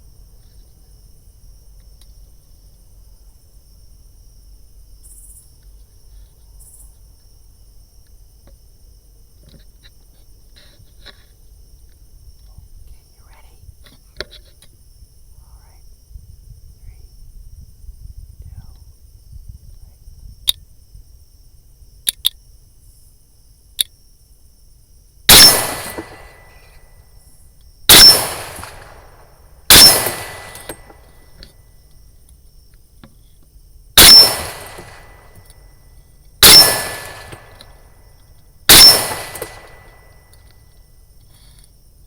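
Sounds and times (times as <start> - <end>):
rifle shots: 25.3 - 26.7, 27.9 - 31.2, 34.0 - 35.5, 36.4 - 37.8, 38.7 - 40.2.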